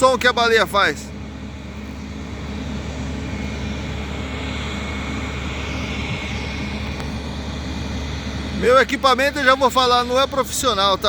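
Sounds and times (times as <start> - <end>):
faint high whine: 0.0 - 11.0
jet engines rushing: 0.0 - 11.0.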